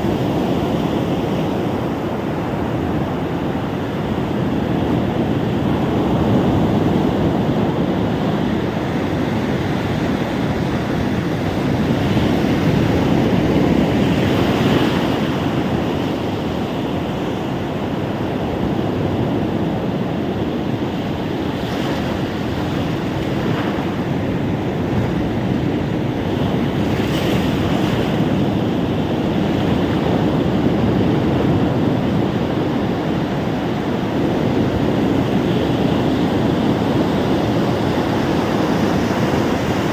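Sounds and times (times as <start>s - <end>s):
waves washing on beach: 0.0s - 39.9s.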